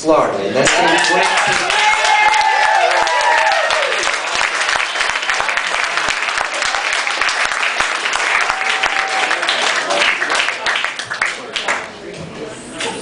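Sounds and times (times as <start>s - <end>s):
audience applauding and cheering: 0.6s - 12.0s
person whooping: 0.8s - 4.1s, 8.4s - 9.5s.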